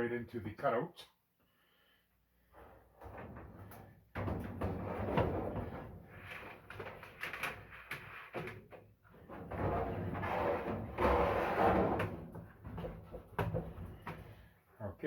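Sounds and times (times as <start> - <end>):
metal drum scraping rumble: 9.4 - 12.4.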